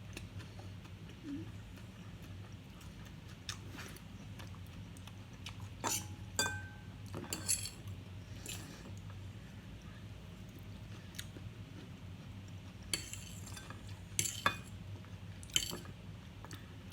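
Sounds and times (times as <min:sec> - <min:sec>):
low steady hum: 0:00.0 - 0:16.9
cutlery clinking on dishes: 0:05.8 - 0:08.8, 0:13.0 - 0:14.8, 0:15.5 - 0:15.9.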